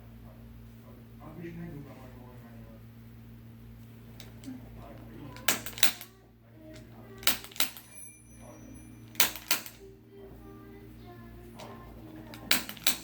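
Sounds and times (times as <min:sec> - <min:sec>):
chiropractic instrument clicking: 0:04.1 - 0:08.0, 0:09.1 - 0:09.8, 0:11.6 - 0:13.0.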